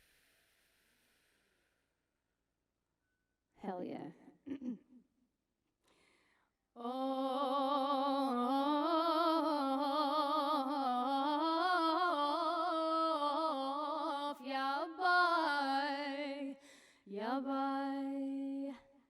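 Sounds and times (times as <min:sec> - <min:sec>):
woman singing wordless melody: 0:06.8 - 0:19.0.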